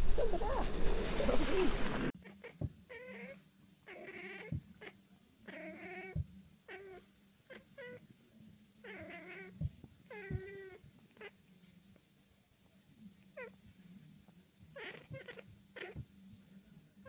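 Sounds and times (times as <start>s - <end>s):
cat meowing: 2.2s - 8.0s, 8.8s - 11.4s, 14.8s - 16.1s.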